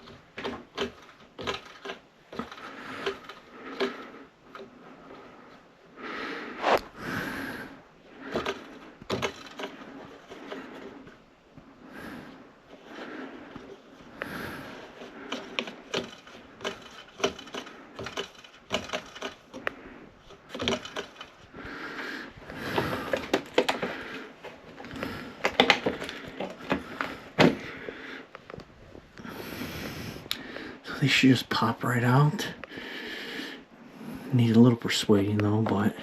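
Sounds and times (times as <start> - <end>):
plastic clips clicking and creaking: 0.0 - 4.8, 8.3 - 11.2, 13.6 - 21.7, 22.5 - 29.3.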